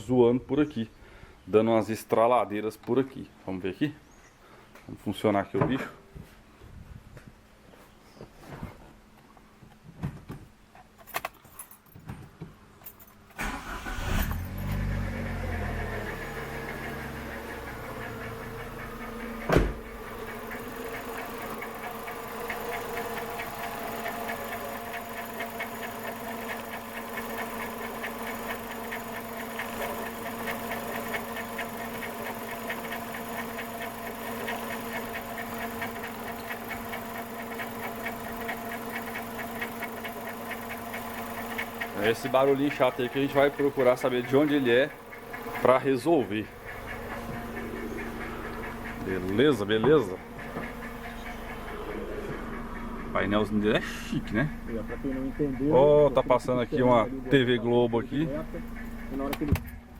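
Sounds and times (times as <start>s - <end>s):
car engine starting and idling: 13.3s - 59.9s
sharp engine knock: 17.9s - 22.6s, 46.5s - 53.1s.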